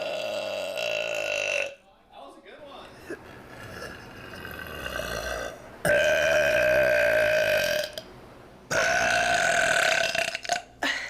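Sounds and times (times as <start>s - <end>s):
person burping: 0.0s - 1.8s, 3.0s - 8.0s, 8.7s - 11.0s.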